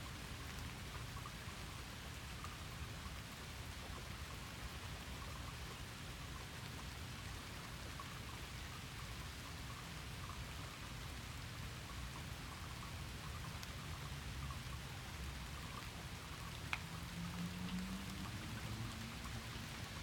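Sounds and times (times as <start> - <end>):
rain falling: 0.0 - 20.0
raindrops ticking: 0.0 - 20.0.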